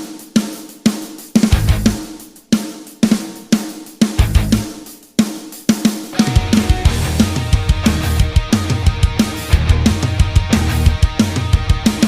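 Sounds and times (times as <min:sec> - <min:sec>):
heavy drum hits: 0:01.4 - 0:02.0, 0:04.2 - 0:04.8, 0:06.1 - 0:12.0
rock band playing: 0:01.4 - 0:02.1, 0:04.1 - 0:04.8, 0:06.1 - 0:12.0.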